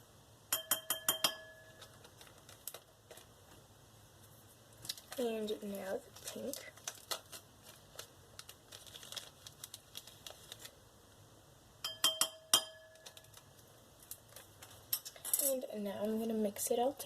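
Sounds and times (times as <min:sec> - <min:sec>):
spoon clinking on container: 0:00.5 - 0:01.9, 0:11.8 - 0:13.3.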